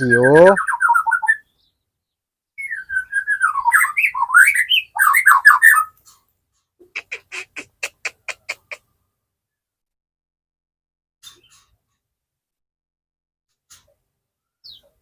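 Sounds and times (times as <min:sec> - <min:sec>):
bird singing: 0:00.0 - 0:06.0, 0:14.4 - 0:15.0.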